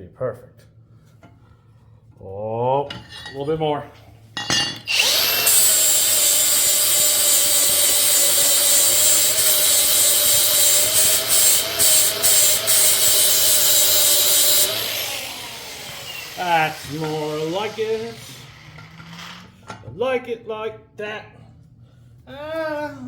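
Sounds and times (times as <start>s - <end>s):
power grinder grinding metal: 4.9s - 19.6s.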